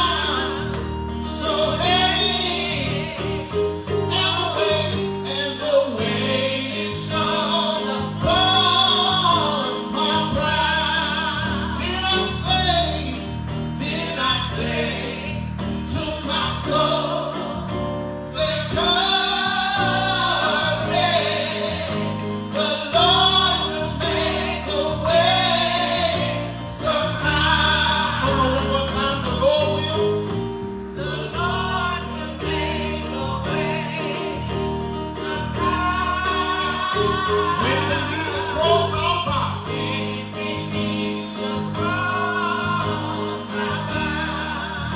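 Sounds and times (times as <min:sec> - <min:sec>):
gospel singing: 0:00.0 - 0:44.9
sustained bass chords: 0:00.0 - 0:44.9.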